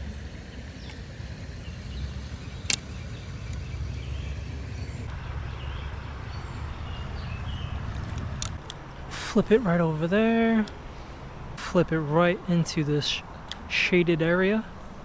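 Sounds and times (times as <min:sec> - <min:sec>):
sharp click: 0:00.8 - 0:05.0.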